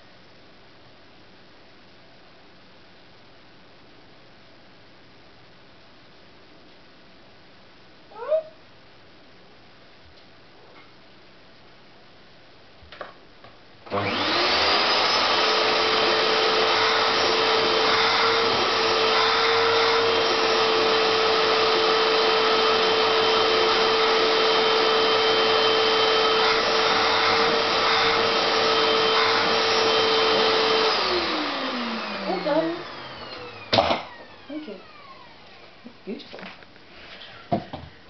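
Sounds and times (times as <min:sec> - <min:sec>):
vacuum cleaner running: 0:13.8 - 0:35.9.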